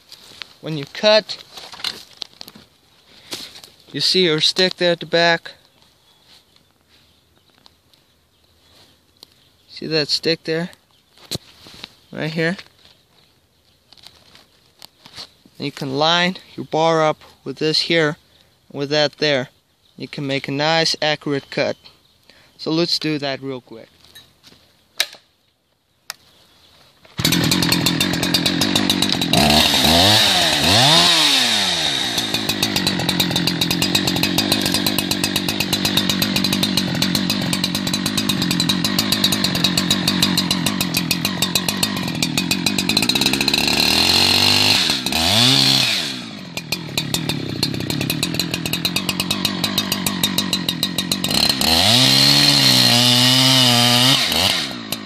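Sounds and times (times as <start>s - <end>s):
chainsaw cutting wood: 27.1s - 55.0s.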